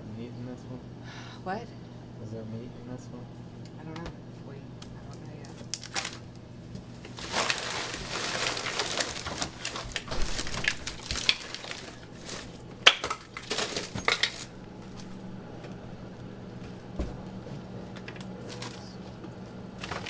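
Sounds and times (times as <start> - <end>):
dishes clattering: 7.1 - 15.7.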